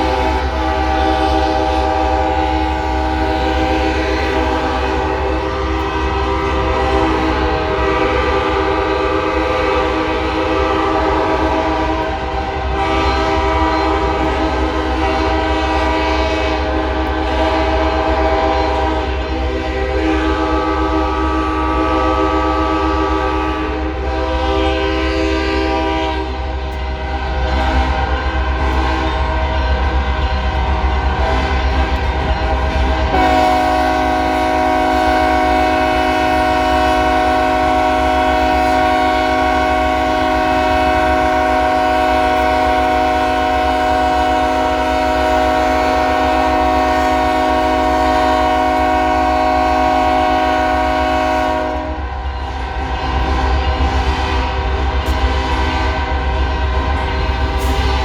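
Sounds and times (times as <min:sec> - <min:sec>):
locomotive air horns blowing: 0:00.0 - 0:58.0.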